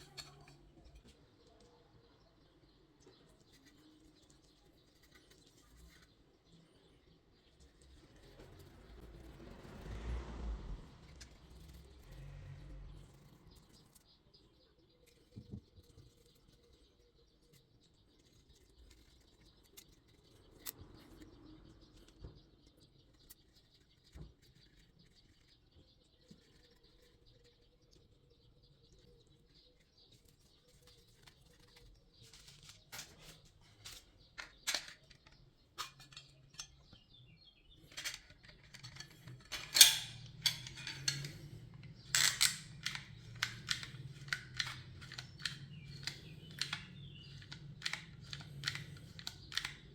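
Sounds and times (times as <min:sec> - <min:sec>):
small metal parts clattering: 0:31.5 - 0:37.0, 0:37.8 - 0:49.9.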